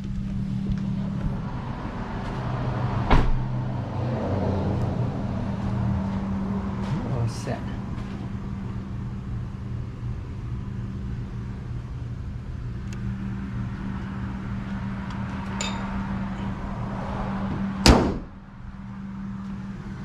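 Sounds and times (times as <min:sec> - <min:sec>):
car engine idling: 0:00.0 - 0:20.0
car door slam: 0:03.1 - 0:03.5, 0:17.8 - 0:18.4.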